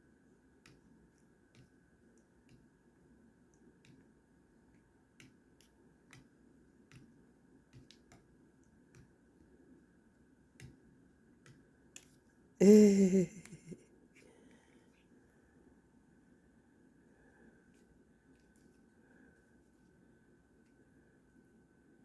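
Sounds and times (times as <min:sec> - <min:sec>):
short voiced call: 0:12.6 - 0:13.8.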